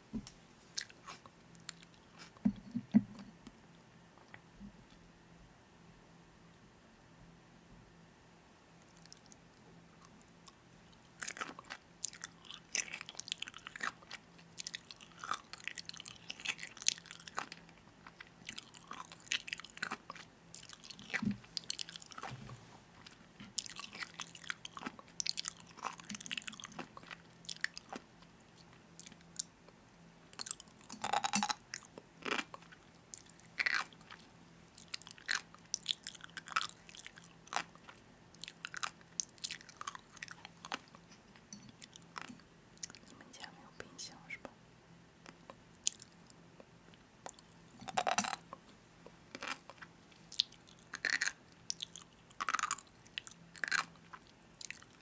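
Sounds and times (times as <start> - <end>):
person chewing crunchy food: 0.7 - 2.7, 11.0 - 29.5, 30.3 - 43.1, 45.3 - 46.7, 47.3 - 55.0.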